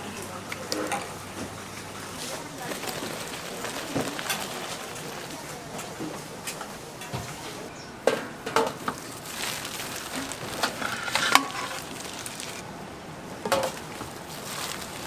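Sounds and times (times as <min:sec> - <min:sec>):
frying hiss: 0:00.0 - 0:12.7, 0:13.3 - 0:15.0
metal utensils clinking on pans: 0:02.3 - 0:12.6.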